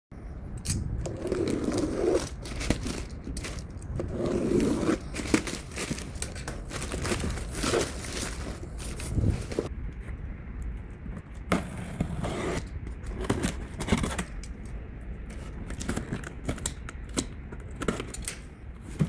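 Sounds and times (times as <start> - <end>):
sharp clicks and scrapes: 0.6 - 19.0
packaging crinkling and tearing: 1.4 - 9.7.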